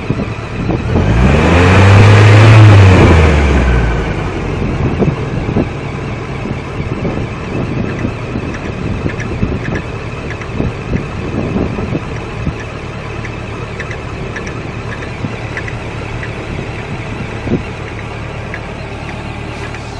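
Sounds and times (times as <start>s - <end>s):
car engine idling: 0.0s - 19.9s
engine ticking: 0.0s - 19.9s.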